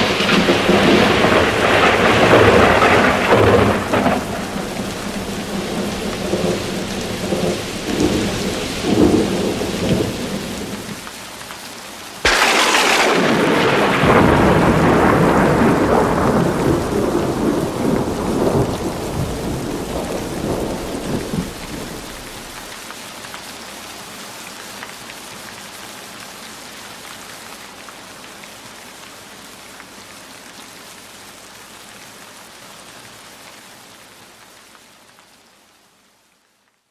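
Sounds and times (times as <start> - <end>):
low rumble of thunder: 0.0 - 11.0, 12.3 - 22.7
sharp thunderclap: 0.0 - 11.0, 12.2 - 22.7
rain falling: 0.0 - 36.9.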